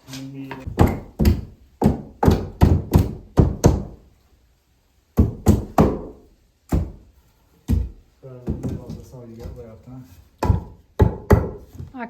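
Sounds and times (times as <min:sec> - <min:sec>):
hammer striking wood: 0:00.7 - 0:04.0, 0:05.2 - 0:07.1, 0:07.7 - 0:09.6, 0:10.4 - 0:11.8.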